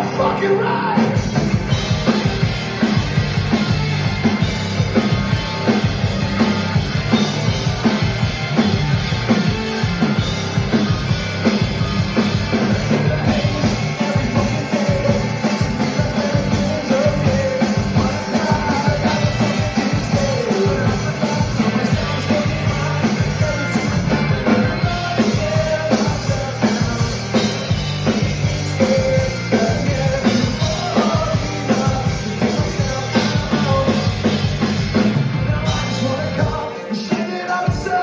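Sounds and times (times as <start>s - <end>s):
person singing: 0.0s - 1.2s, 12.5s - 38.0s
live rock band: 0.0s - 38.0s.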